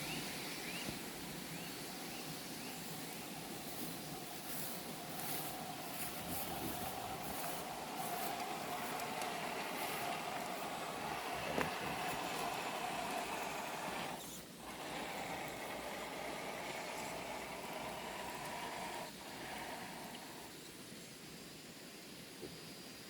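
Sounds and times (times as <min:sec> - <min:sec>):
electric motor whining: 0:03.5 - 0:20.6.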